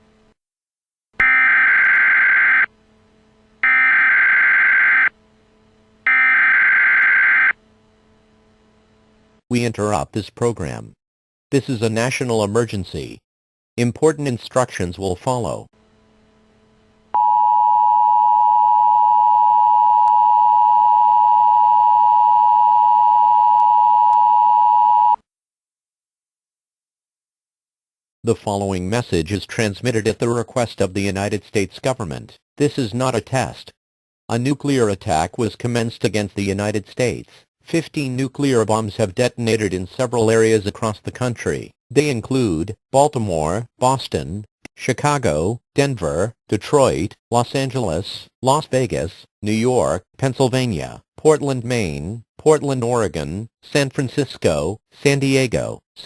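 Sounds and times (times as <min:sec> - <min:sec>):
loud two-tone alarm: 0:01.2 - 0:02.7, 0:03.6 - 0:05.2, 0:06.1 - 0:07.6.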